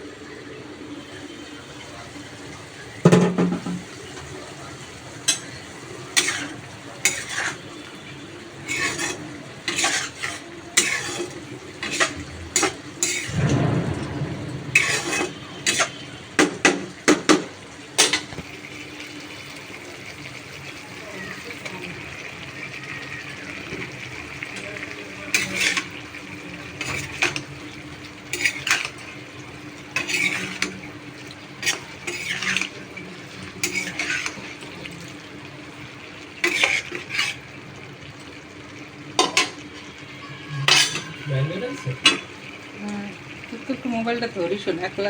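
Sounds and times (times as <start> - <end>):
metal spoon stirring in pot: 6.2 - 7.7, 8.6 - 13.3, 25.3 - 26.1, 28.3 - 29.2, 29.9 - 31.0, 31.6 - 32.8, 33.6 - 34.6, 36.4 - 37.4, 40.6 - 41.2.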